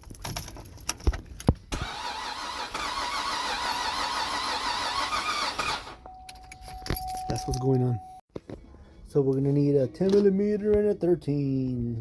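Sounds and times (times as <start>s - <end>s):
car engine cranking: 0.0s - 6.7s.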